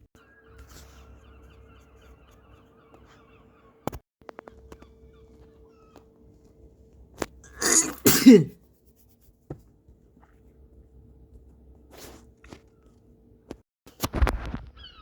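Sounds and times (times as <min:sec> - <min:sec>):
person coughing: 0:07.5 - 0:08.6.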